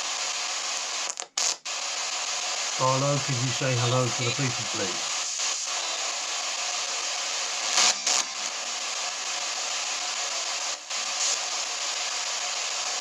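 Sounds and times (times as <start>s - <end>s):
static bursts: 1.8s - 13.0s
ghost box static hiss: 2.8s - 5.8s.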